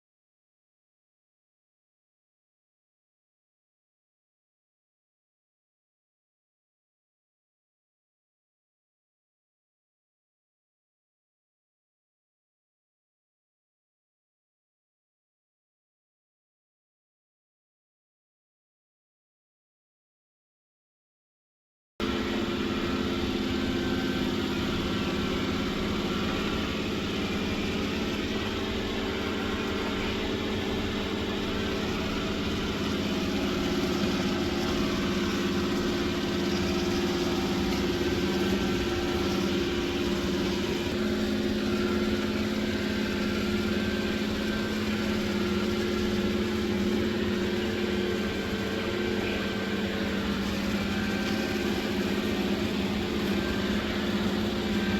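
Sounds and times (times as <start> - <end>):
robot vacuum humming: 22.0 - 54.9.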